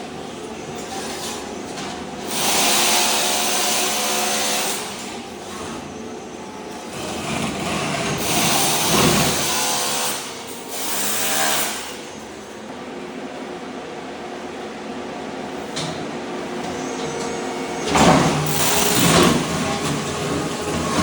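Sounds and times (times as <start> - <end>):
floor scraper running: 2.2 - 5.7, 6.9 - 12.1, 16.7 - 21.0
blade scraping mortar off concrete: 18.5 - 19.6.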